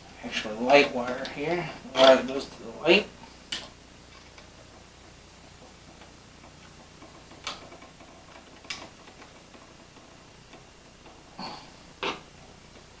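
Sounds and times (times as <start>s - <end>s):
screwdriver ticking on switch terminals: 3.5s - 11.3s.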